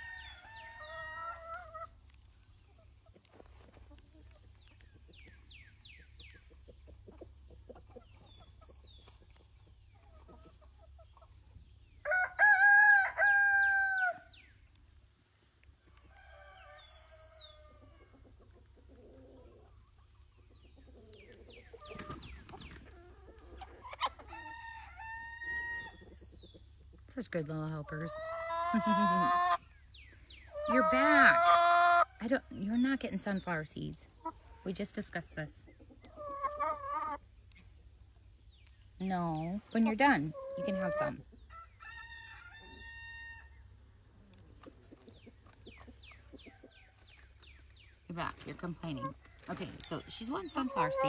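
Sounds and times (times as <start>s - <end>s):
chickens clucking: 0.0s - 51.0s
hens complaining calls: 0.0s - 51.0s
rooster crowing: 12.1s - 14.3s.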